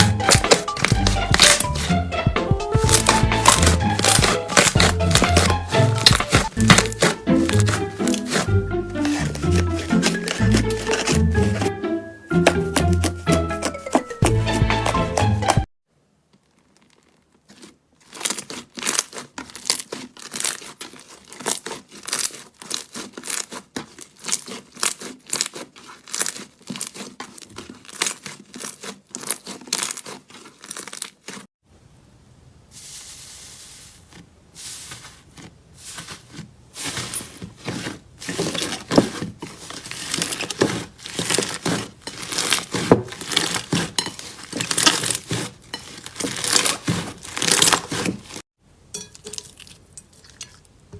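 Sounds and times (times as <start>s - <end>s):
slime crackling and popping: 0.0s - 1.9s, 2.8s - 11.6s, 16.3s - 31.4s, 38.4s - 48.4s.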